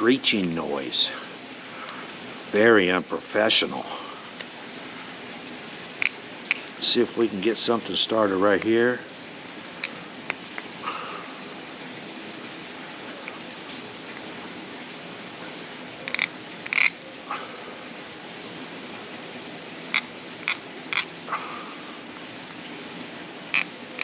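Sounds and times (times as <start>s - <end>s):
knife scraping wood: 16.1s - 16.9s.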